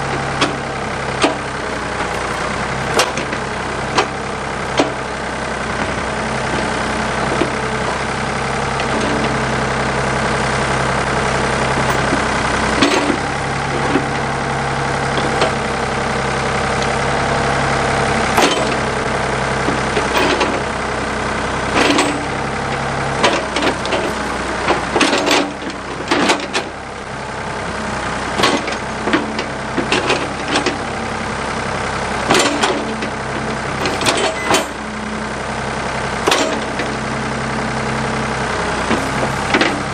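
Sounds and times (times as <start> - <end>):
backhoe engine running: 0.0 - 39.9
metal bucket clanks and knocks: 11.8 - 13.2, 38.8 - 39.9.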